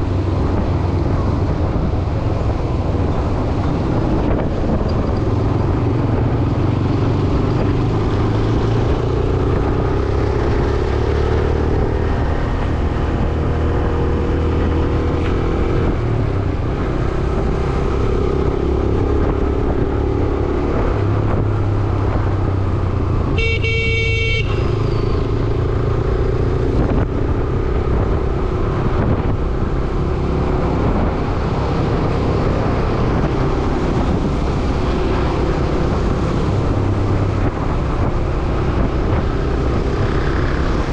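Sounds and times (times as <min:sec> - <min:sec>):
wind on microphone: 0:00.0 - 0:23.4, 0:24.5 - 0:40.9
motorcycle engine and road noise: 0:00.0 - 0:40.9
vehicle horn honking: 0:23.4 - 0:25.1.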